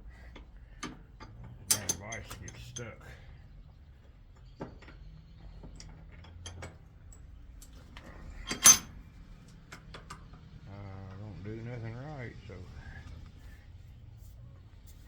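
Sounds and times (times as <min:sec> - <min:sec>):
metal tool clicks: 0:00.8 - 0:02.8.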